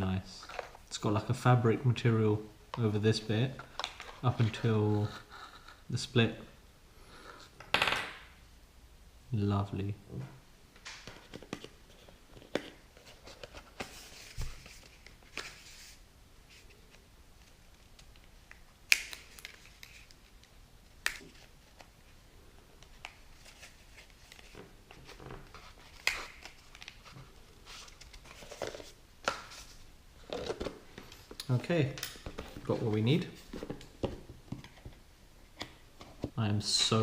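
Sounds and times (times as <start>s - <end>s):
packaging rustling: 22.9s - 31.6s.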